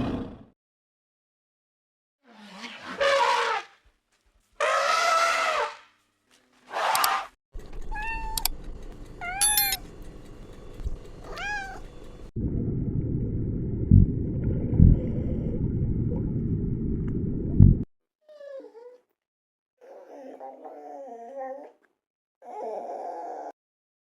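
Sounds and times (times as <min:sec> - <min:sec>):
cat meowing: 0:07.9 - 0:08.5, 0:11.2 - 0:11.9
low rumbling noise: 0:12.1 - 0:17.9.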